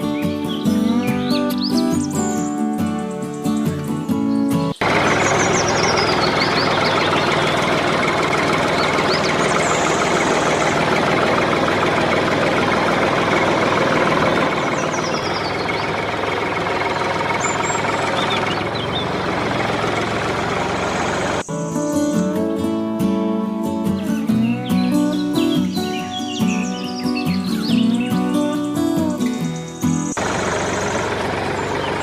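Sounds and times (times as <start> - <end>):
birds chirping: 0.0 - 32.0
machine engine running: 4.8 - 32.0.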